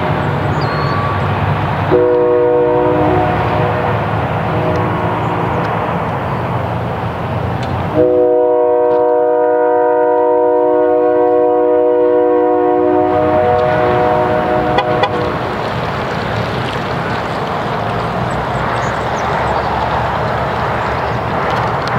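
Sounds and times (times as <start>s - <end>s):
multi-tone horn chord: 1.9s - 3.9s, 8.0s - 15.3s.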